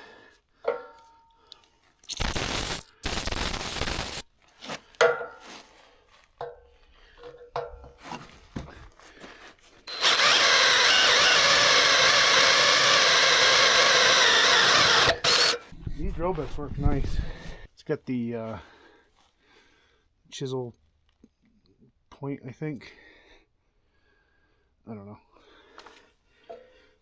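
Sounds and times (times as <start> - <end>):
power drill boring through steel: 2.0 - 4.2, 9.9 - 15.7.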